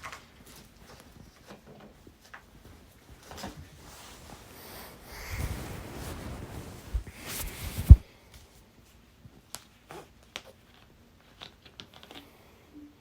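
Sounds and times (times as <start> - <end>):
rustling handling noise: 0.0 - 9.0.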